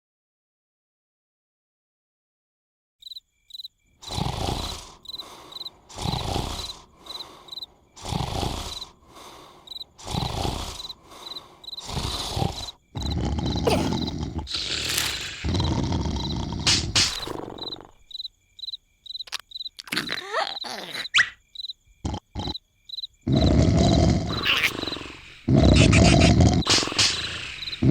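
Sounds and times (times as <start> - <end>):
crickets chirping: 3.0 - 27.9
cartoon snoring: 4.0 - 18.1, 19.3 - 21.4, 22.0 - 22.6, 23.2 - 27.9.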